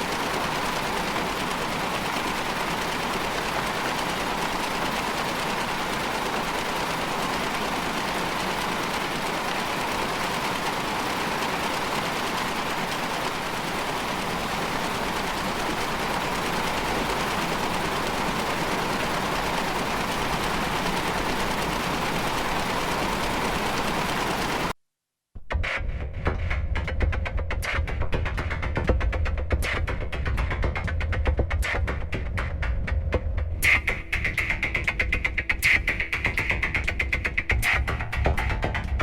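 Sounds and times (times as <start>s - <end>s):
rattling mechanical noise drone: 0.0s - 24.7s.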